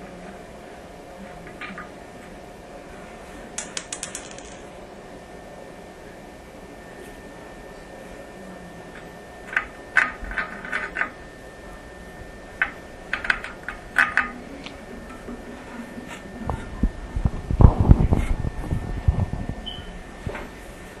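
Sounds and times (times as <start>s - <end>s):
low bumps and rumbling: 16.5s - 19.6s.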